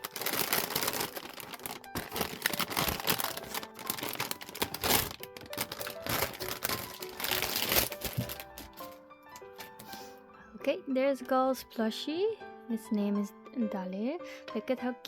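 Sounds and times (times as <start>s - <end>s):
packaging crinkling and tearing: 0.0s - 10.0s
light background music: 0.0s - 15.0s.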